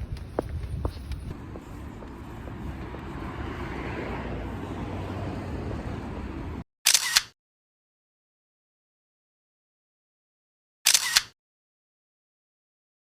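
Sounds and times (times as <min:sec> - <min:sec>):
traffic rumble: 0:00.0 - 0:06.6.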